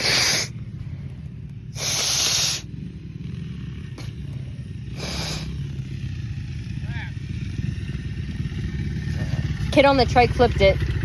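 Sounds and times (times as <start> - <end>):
person sneezing: 0.0 - 0.5, 1.8 - 2.6, 5.0 - 5.6
steady low hum: 0.0 - 11.0.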